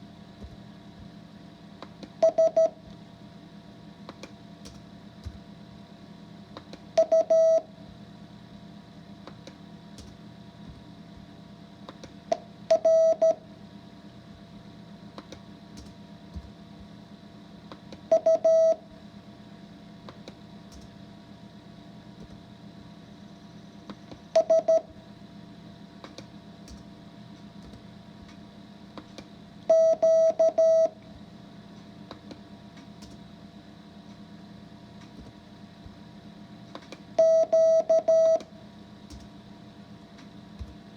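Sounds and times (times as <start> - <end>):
morse code beeps: 2.2 - 2.8, 7.0 - 7.6, 12.7 - 13.4, 18.1 - 18.8, 24.4 - 24.9, 29.7 - 31.0, 37.2 - 38.4.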